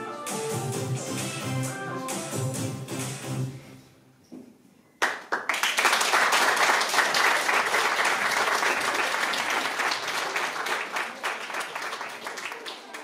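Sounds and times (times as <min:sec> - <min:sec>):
audience applauding: 0:05.0 - 0:13.0.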